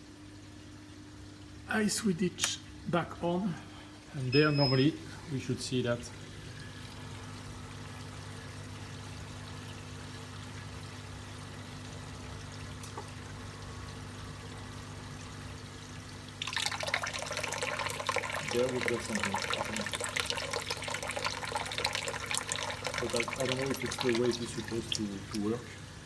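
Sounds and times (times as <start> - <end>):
pumps humming: 0.0 - 26.0
water pouring and splashing: 16.3 - 26.0.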